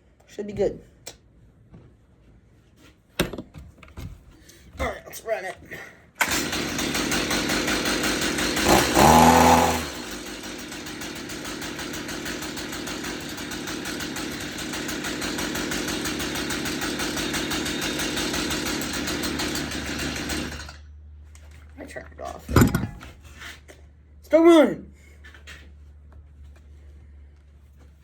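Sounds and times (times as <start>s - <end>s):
chainsaw engine revving and idling: 6.2s - 20.9s.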